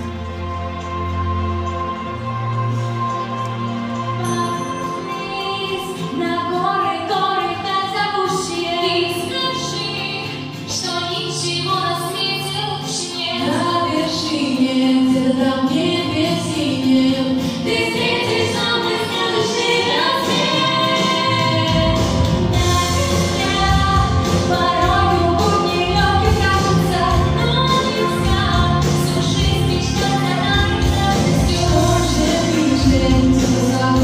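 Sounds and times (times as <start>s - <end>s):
women singing together: 2.7s - 34.0s
instrumental backing track: 13.3s - 34.0s.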